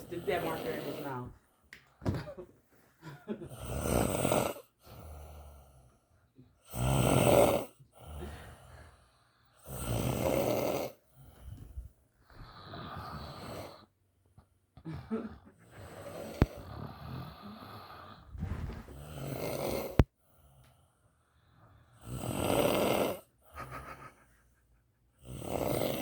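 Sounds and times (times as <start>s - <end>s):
man snoring: 0.0s - 1.3s, 3.4s - 6.0s, 6.6s - 11.4s, 12.4s - 13.9s, 14.9s - 20.5s, 21.8s - 23.8s, 25.2s - 26.0s
soft breaths out: 15.2s - 21.9s.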